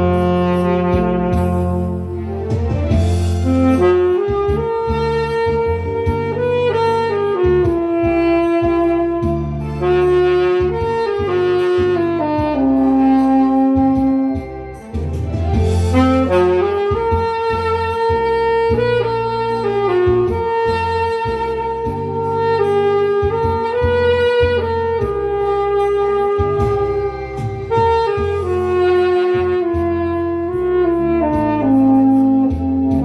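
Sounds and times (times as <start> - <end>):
instrumental backing with bass line: 0.0 - 33.0
tenor saxophone melody: 0.0 - 33.0.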